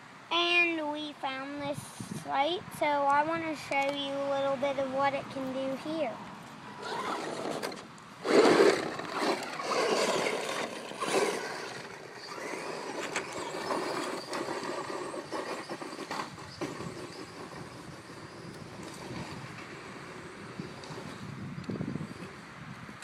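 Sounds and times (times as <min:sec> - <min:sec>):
tyres on gravel: 0:05.4 - 0:22.0
electric motor whining: 0:06.7 - 0:22.3.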